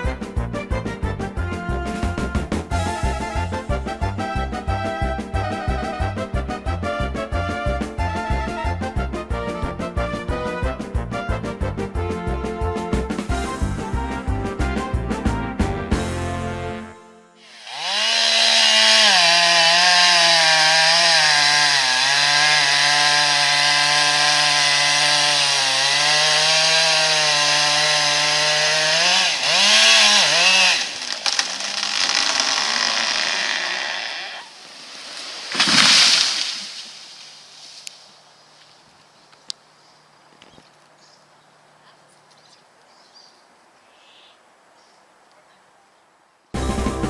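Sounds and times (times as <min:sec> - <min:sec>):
chainsaw cutting wood: 0:17.4 - 0:37.9.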